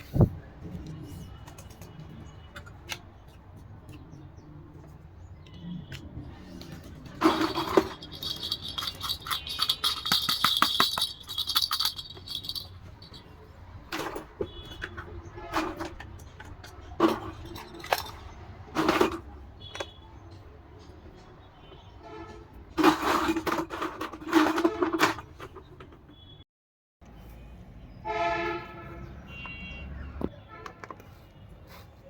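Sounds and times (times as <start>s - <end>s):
plastic toy pieces rattling: 6.7s - 13.3s.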